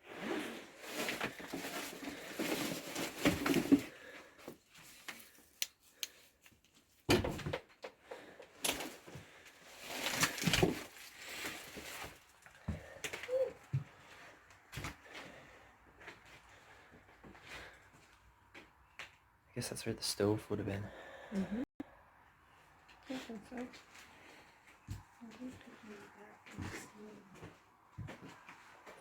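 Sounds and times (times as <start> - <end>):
knocks and scrapes of handling things: 0.1 - 15.1
rustling: 0.2 - 6.9, 8.8 - 13.4.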